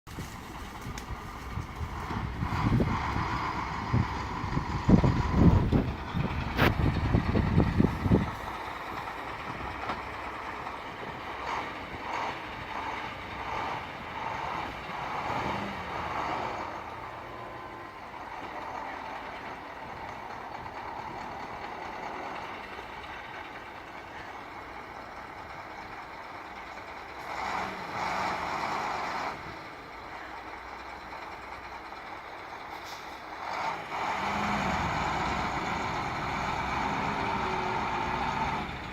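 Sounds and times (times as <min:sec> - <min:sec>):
low rumbling: 0:00.1 - 0:29.6
heavy machinery running: 0:00.1 - 0:38.9
truck reversing beeper: 0:15.9 - 0:20.3.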